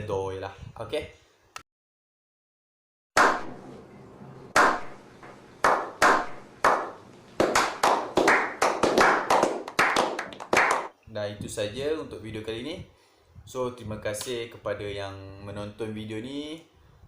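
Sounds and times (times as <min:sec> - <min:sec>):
sharp percussive strikes: 0:03.2 - 0:03.6, 0:04.5 - 0:05.0, 0:05.6 - 0:09.4.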